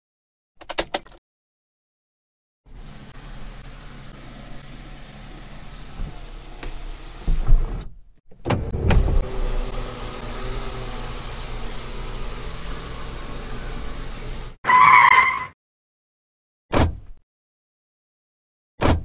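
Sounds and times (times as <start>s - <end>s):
car engine running: 2.7s - 7.4s, 8.6s - 14.6s
car horn honk: 14.7s - 15.5s.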